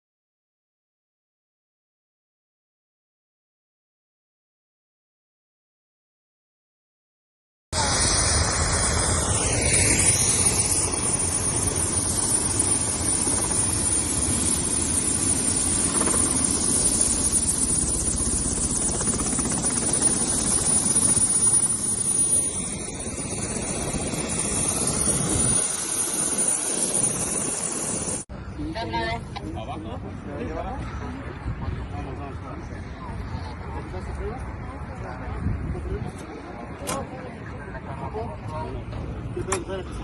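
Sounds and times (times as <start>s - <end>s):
helicopter rotor and engine: 7.8s - 35.4s.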